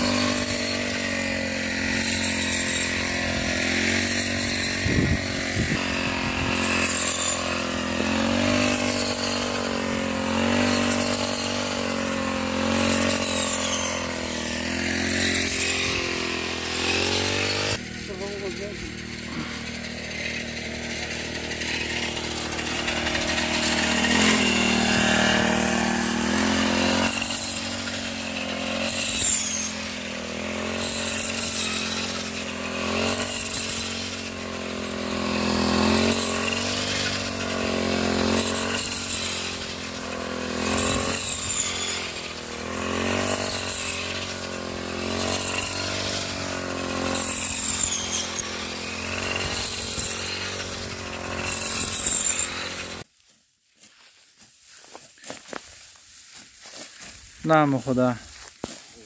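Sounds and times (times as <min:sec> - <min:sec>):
combine harvester engine: 0:00.0 - 0:53.1.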